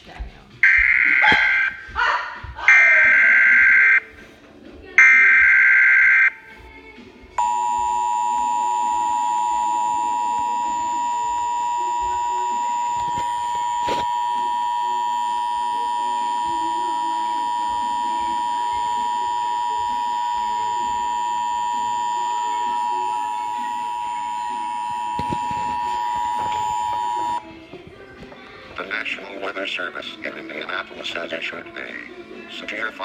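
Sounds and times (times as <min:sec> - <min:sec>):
digital data screech: 0:00.6 - 0:01.8, 0:02.7 - 0:04.0, 0:05.0 - 0:06.3, 0:07.4 - 0:27.4
steady attention tone: 0:00.6 - 0:01.9, 0:02.7 - 0:04.1, 0:05.0 - 0:06.4, 0:07.4 - 0:27.4.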